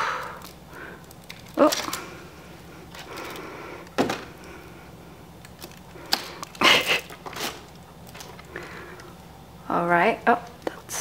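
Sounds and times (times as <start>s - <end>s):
plastic packaging crinkling: 0.2s - 2.2s, 5.4s - 8.6s.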